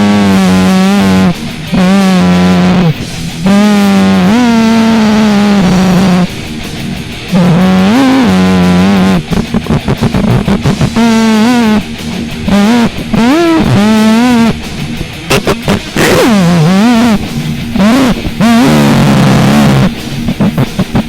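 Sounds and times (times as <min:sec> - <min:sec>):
distorted noise music: 0:00.0 - 0:21.0.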